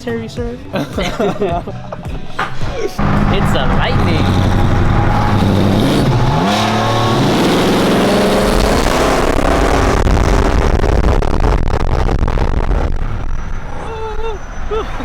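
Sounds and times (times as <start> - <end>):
truck engine at full throttle: 3.0 - 15.0.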